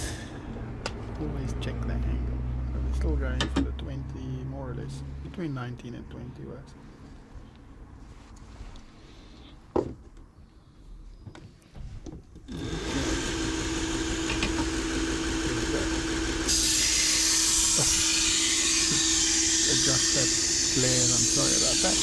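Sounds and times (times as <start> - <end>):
belt grinder humming: 12.5 - 22.0
steel grinding on belt: 12.5 - 22.0.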